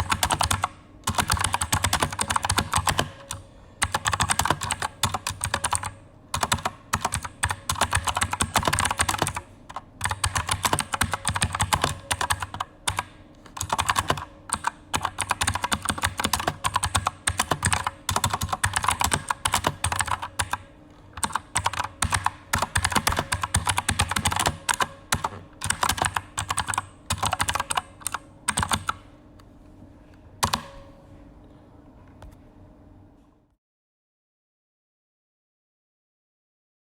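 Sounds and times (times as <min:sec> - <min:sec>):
mechanical keyboard typing clicks: 0:00.0 - 0:20.6, 0:21.2 - 0:29.0, 0:30.4 - 0:30.8.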